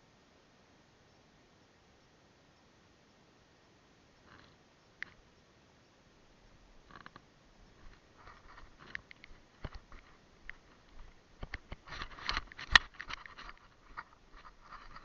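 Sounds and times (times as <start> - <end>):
close rustling: 6.8 - 15.0
sharp clicks and snaps: 7.8 - 15.0.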